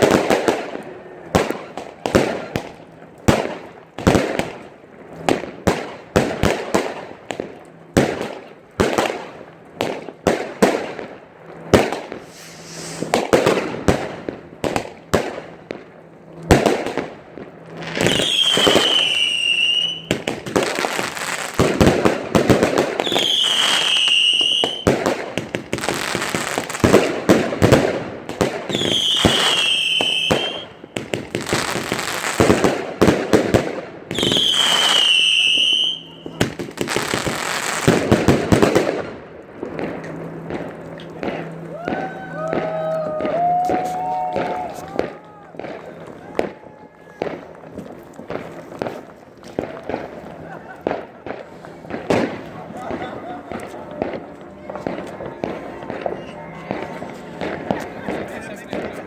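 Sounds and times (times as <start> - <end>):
fireworks bangs and crackling: 0.0 - 59.0
firework whistles: 12.2 - 13.6, 17.8 - 21.1, 22.8 - 25.0, 28.7 - 32.5, 34.1 - 37.8.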